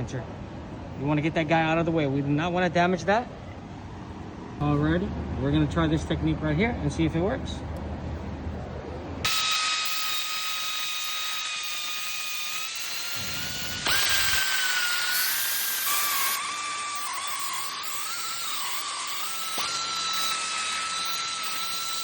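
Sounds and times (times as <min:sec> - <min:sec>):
cordless power tool whining: 0:09.2 - 0:22.0.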